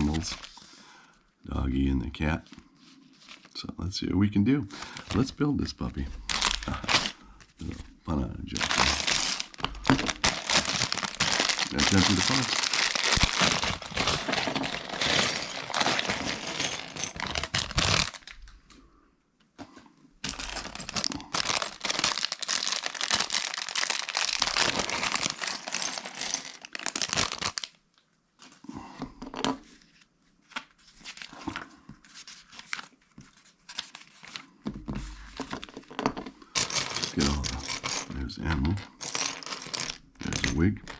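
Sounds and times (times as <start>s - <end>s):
plastic bags tearing and crinkling: 0.0s - 0.5s, 6.2s - 7.2s, 8.5s - 18.6s, 20.2s - 27.8s, 36.6s - 38.0s.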